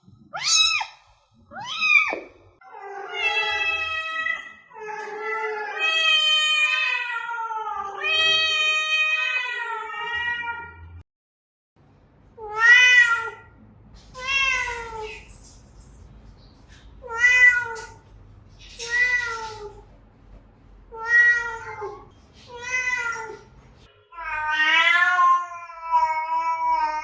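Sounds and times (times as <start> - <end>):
cat meowing: 0.3 - 10.8, 12.4 - 13.5, 14.2 - 15.3, 17.0 - 18.0, 18.8 - 19.8, 20.9 - 23.4, 24.1 - 27.0.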